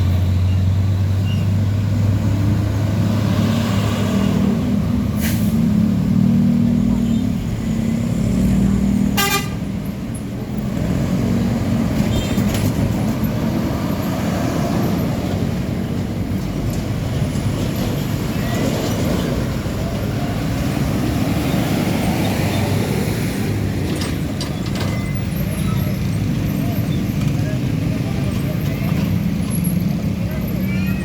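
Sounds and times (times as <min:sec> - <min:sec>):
truck diesel engines passing: 0:00.0 - 0:31.0
vehicle horn toot: 0:09.2 - 0:09.6.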